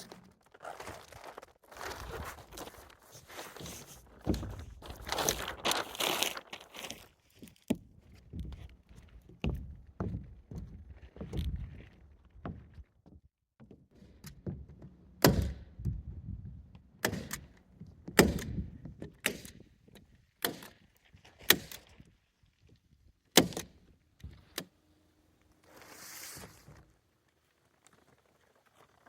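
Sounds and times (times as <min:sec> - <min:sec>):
nails hammered into plywood: 0:15.2 - 0:15.6, 0:18.1 - 0:19.6, 0:20.4 - 0:20.8, 0:23.4 - 0:23.7.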